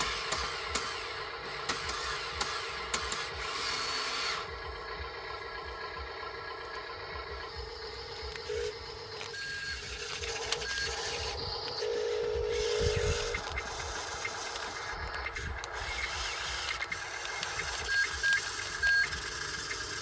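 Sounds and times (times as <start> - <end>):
small electric motors whirring: 0.0 - 20.0.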